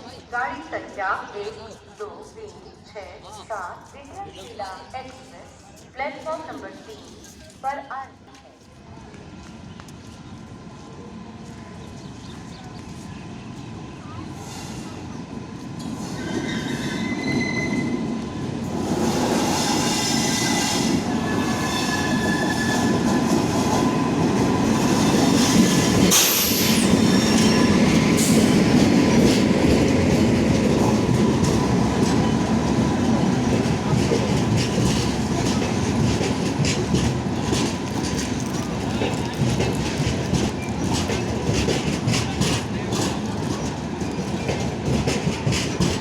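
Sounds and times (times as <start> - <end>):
train wheels rumbling on rail: 8.6 - 46.0
high wheel squeals: 16.2 - 18.0.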